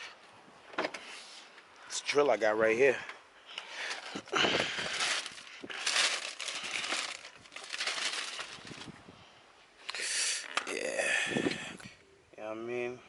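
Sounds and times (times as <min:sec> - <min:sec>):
packaging crinkling: 0:03.8 - 0:08.9.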